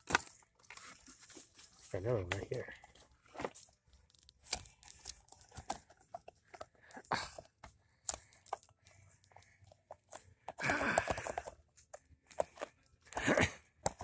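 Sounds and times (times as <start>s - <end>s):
packaging rustling: 0.0s - 13.3s.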